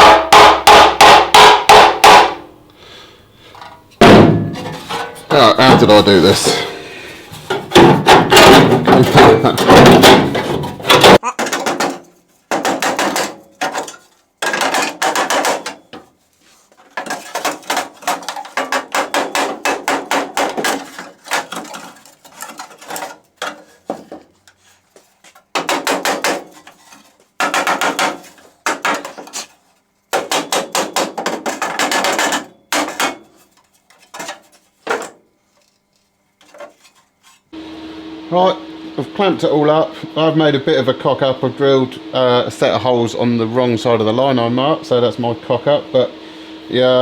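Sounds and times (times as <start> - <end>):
hammer tapping sheet steel: 0.0 - 2.5, 17.0 - 21.8, 25.5 - 33.4.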